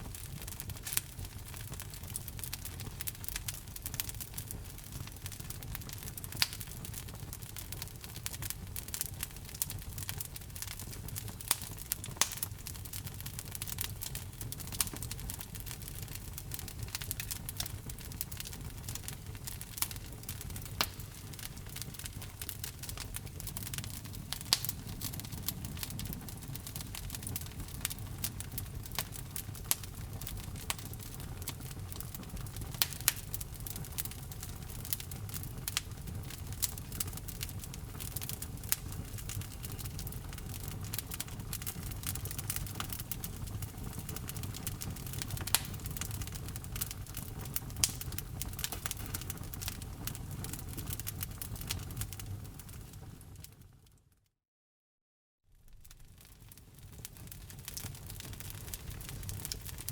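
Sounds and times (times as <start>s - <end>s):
burning wood popping: 0.0s - 52.8s, 55.7s - 59.9s
fire crackling in fireplace: 0.0s - 54.1s, 55.5s - 59.9s.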